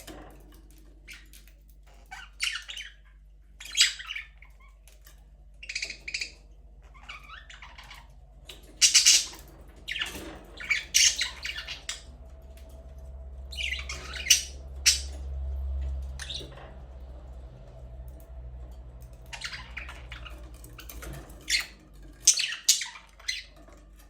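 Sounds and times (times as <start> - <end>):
budgerigars squawking and chirping: 2.0 - 4.8, 5.6 - 12.3, 13.4 - 15.3, 16.1 - 16.7, 19.2 - 23.7
low hum: 6.4 - 22.2.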